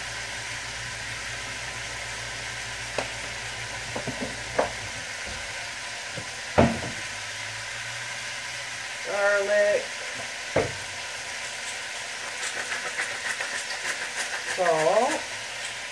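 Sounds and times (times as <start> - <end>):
vegetables sizzling in a wok: 0.0 - 15.9
utensil knocks: 10.6 - 10.8.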